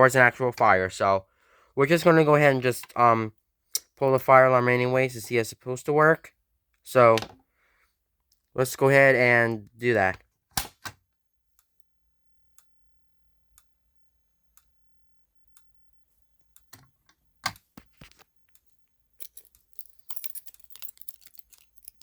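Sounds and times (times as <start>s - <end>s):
clicking and clattering: 19.2s - 22.0s.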